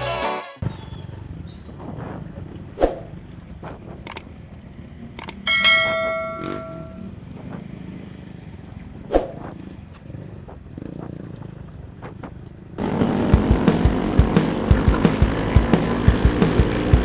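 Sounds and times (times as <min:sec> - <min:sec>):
metallic clang ringing: 0:05.5 - 0:07.1.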